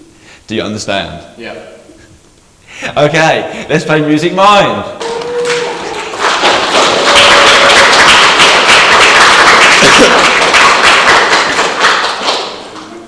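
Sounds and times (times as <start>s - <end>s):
audience applause: 5.0s - 13.0s.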